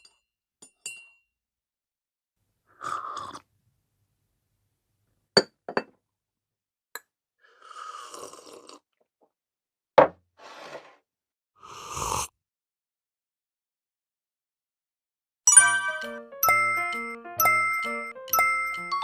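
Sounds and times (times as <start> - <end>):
noisy sipping: 2.8 - 3.5, 7.5 - 9.0
cup set down with knock: 10.0 - 10.2.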